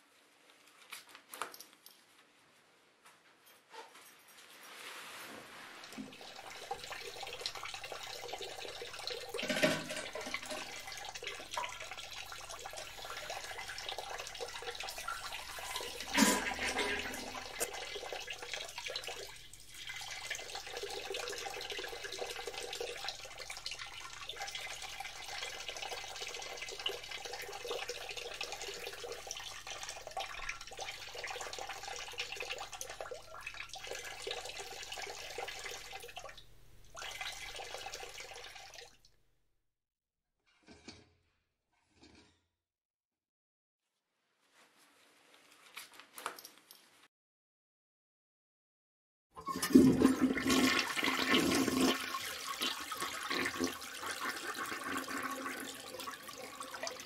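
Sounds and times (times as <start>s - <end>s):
tap water running into sink: 5.9s - 39.0s, 49.4s - 57.0s.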